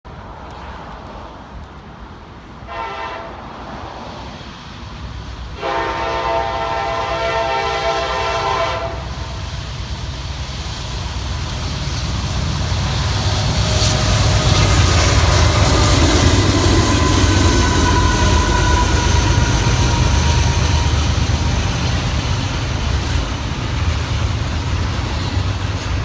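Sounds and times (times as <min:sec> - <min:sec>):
train rumble: 0:00.1 - 0:26.0
locomotive air horn: 0:02.7 - 0:03.4, 0:05.6 - 0:09.1, 0:15.5 - 0:21.8.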